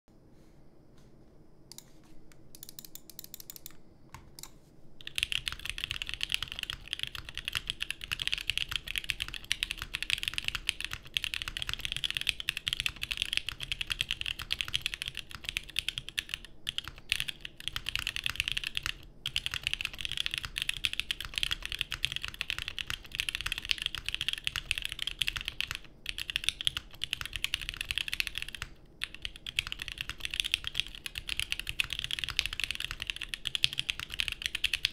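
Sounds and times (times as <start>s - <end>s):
mechanical keyboard typing: 2.5s - 3.8s, 4.4s - 34.9s.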